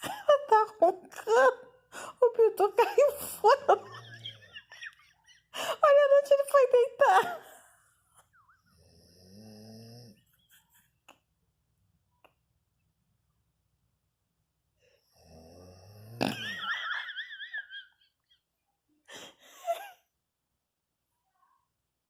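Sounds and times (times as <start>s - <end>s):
long low snores: 8.7s - 10.3s, 15.0s - 16.4s.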